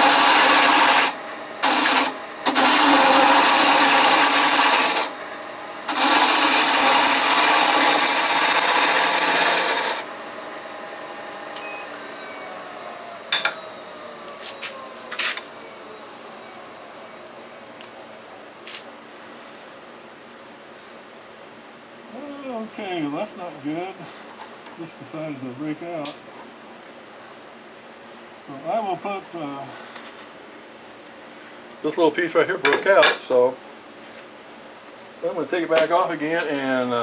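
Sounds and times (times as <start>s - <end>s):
lathe tool cutting wood: 0.0s - 17.6s
lathe hum spinning down: 0.0s - 20.2s.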